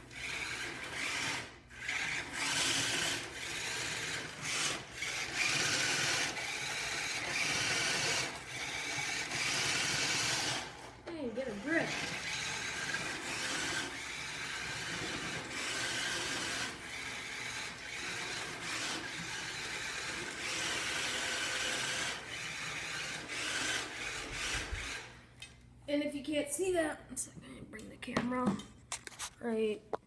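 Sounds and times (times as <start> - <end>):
toy car motor whirring: 0.0 - 25.2.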